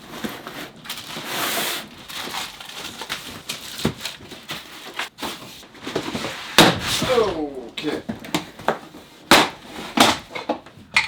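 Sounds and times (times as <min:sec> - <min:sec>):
cardboard and packing rustling: 0:00.0 - 0:10.9.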